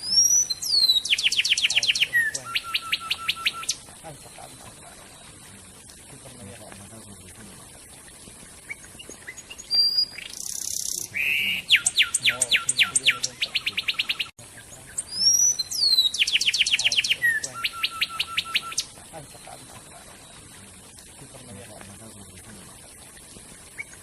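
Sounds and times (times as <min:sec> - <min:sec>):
songbird trilling: 0:00.0 - 0:05.5, 0:08.6 - 0:20.7.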